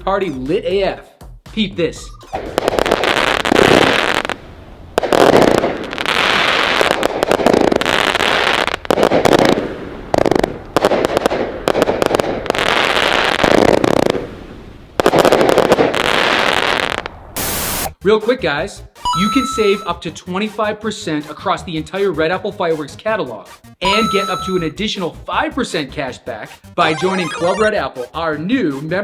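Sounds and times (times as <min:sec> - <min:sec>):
fireworks firing rapid volleys: 0:02.3 - 0:04.4, 0:05.0 - 0:14.4, 0:15.0 - 0:17.9.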